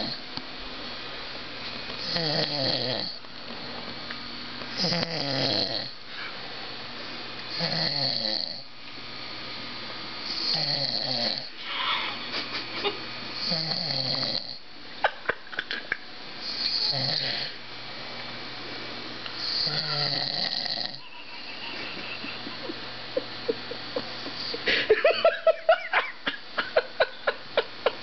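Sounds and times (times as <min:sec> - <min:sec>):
man snoring: 0:00.0 - 0:00.2, 0:02.0 - 0:03.2, 0:04.8 - 0:06.0, 0:07.5 - 0:08.7, 0:10.2 - 0:11.5, 0:13.4 - 0:14.6, 0:16.4 - 0:17.6, 0:19.4 - 0:21.1.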